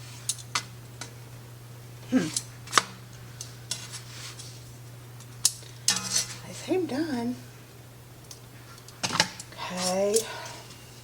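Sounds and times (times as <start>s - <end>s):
steady low hum: 0.0s - 11.0s
utensils clinking against cookware: 5.4s - 6.4s.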